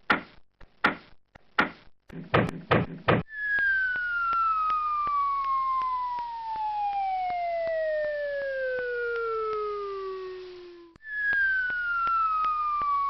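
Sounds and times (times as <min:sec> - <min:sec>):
whistle sliding down in pitch: 0:03.3 - 0:13.0.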